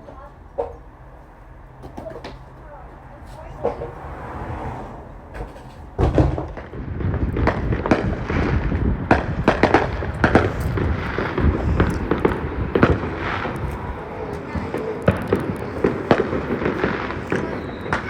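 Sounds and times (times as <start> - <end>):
fireworks cracking and banging: 5.0 - 18.0.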